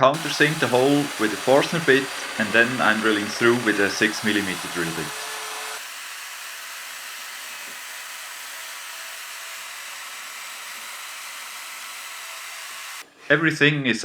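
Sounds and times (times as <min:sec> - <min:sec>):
steady hiss: 0:00.0 - 0:05.8.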